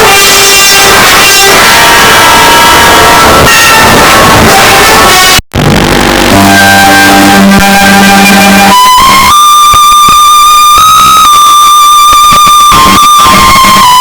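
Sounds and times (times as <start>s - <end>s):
low sustained notes: 0.0s - 9.3s
high held melodic tone: 0.0s - 14.0s.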